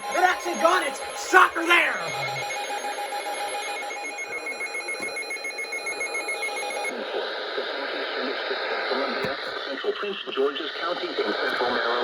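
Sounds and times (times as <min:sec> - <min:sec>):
alarm beeping rapidly: 0:00.0 - 0:06.9.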